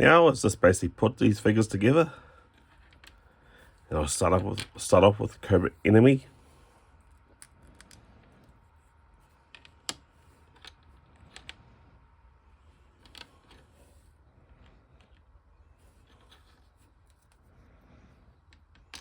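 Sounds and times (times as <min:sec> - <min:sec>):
handling small plastic parts: 0:12.6 - 0:17.5.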